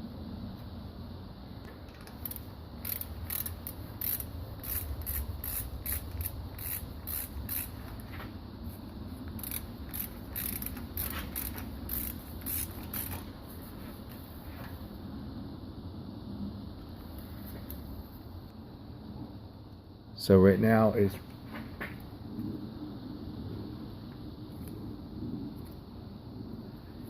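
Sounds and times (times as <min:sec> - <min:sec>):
ratchet wrench clicking: 0:01.9 - 0:08.1, 0:09.3 - 0:13.3.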